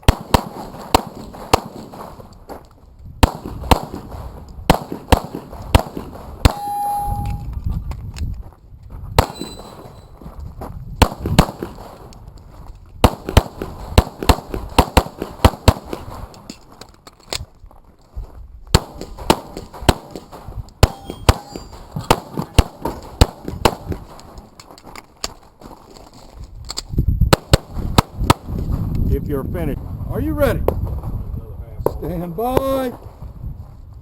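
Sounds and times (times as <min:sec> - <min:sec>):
pistol shots: 0:00.0 - 0:02.3, 0:03.2 - 0:06.8, 0:09.2 - 0:10.0, 0:11.0 - 0:12.0, 0:13.0 - 0:16.4, 0:18.7 - 0:24.5
steel targets clanging: 0:20.9 - 0:21.9.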